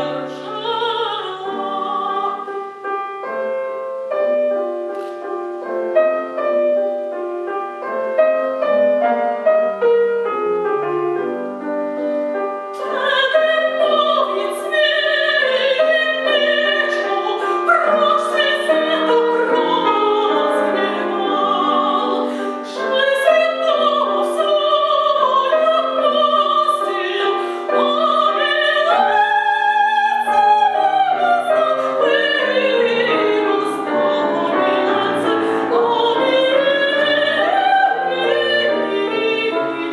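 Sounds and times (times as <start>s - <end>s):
woman singing opera: 0.0s - 2.7s, 12.8s - 39.9s
piano playing: 0.0s - 39.9s.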